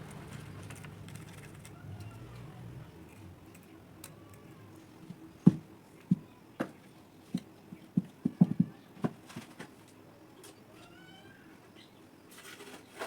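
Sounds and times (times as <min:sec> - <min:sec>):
hard objects knocking on a surface: 0:05.1 - 0:09.5.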